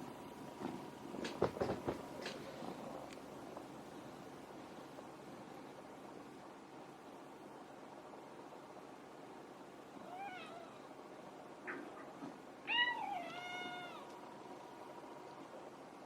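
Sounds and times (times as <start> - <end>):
cat meowing: 10.0 - 10.9, 12.6 - 14.2
cat yowling: 10.0 - 10.9, 11.7 - 14.2.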